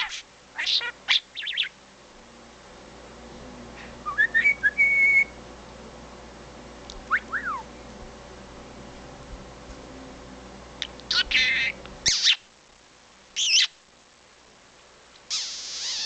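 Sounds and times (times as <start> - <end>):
budgerigar whistling: 0.0 - 1.8, 11.1 - 12.4, 13.4 - 13.7.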